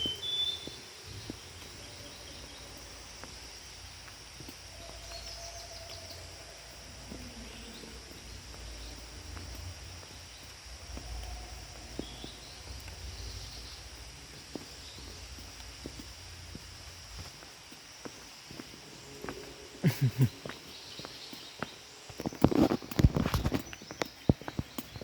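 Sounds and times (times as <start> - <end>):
bird calls: 0.0 - 3.3
high insect drone: 0.0 - 25.0.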